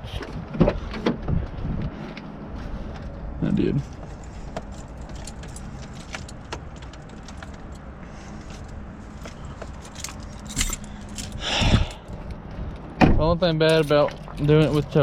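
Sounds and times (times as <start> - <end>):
keys jangling and clicking: 4.7 - 7.9, 9.7 - 11.6, 13.7 - 14.8.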